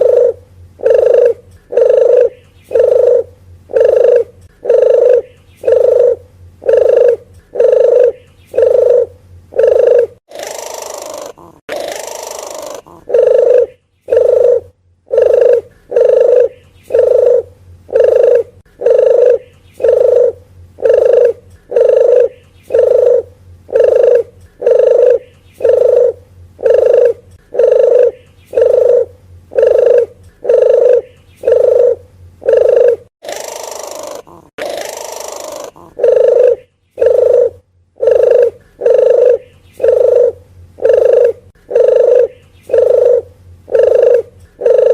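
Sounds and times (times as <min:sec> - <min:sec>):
dove cooing: 0:00.0 - 0:44.9.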